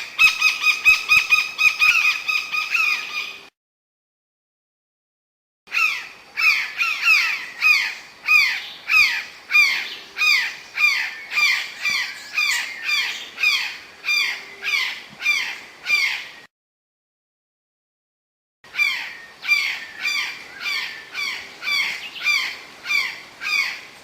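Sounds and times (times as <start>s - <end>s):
magpie calling: 0.0s - 3.4s.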